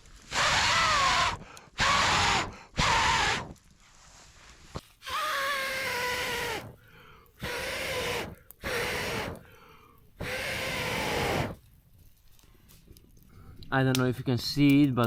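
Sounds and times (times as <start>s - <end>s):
person breathing out hard: 1.0s - 3.5s, 5.1s - 10.4s
whistling breath tone: 5.0s - 11.6s.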